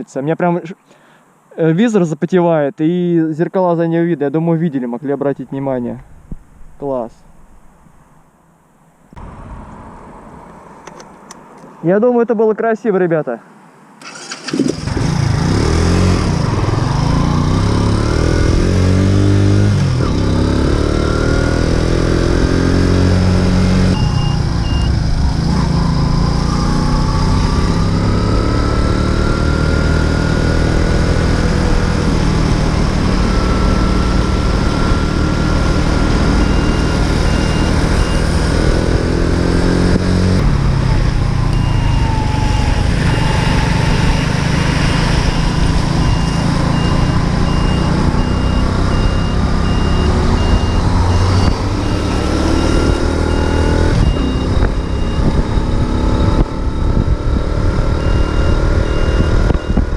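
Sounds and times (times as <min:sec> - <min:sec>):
moped engine revving: 0:14.0 - 0:59.9
wind noise on microphone: 0:52.7 - 0:59.9.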